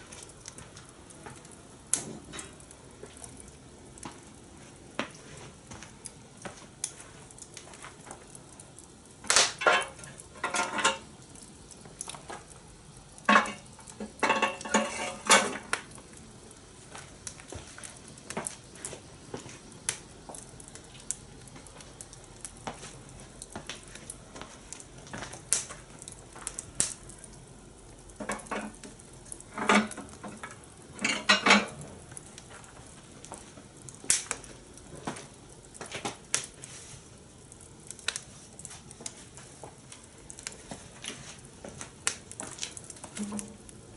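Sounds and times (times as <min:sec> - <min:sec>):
small clicks and crackles: 0:00.0 - 0:43.9
steady low hiss: 0:00.0 - 0:43.9
cooking tools clattering on metal grill: 0:02.0 - 0:02.6, 0:09.3 - 0:11.1, 0:13.2 - 0:15.8, 0:28.2 - 0:31.8.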